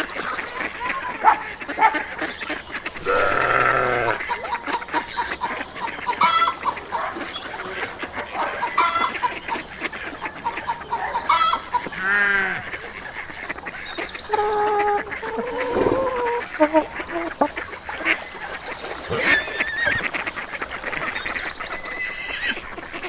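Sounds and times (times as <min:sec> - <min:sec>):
drawn-out poultry calls: 0:00.0 - 0:23.0
poultry clucking and honking: 0:00.0 - 0:23.0.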